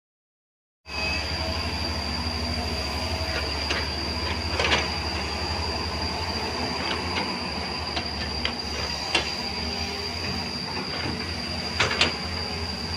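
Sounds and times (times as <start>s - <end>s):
high whine: 0.9s - 12.9s
excavator diesel engine rumbling: 1.0s - 12.9s
metallic squeaks and clanks: 3.0s - 12.9s.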